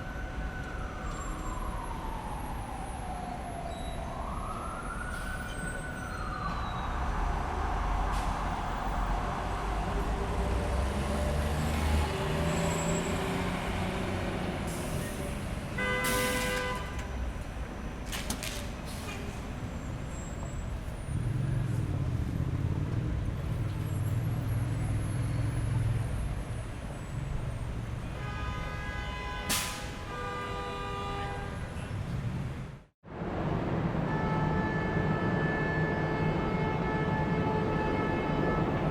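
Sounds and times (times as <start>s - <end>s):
siren: 0.0s - 9.0s, 34.0s - 38.9s
passing vehicles rumbling: 4.4s - 28.2s, 28.8s - 38.9s
car horns honking: 15.8s - 17.1s.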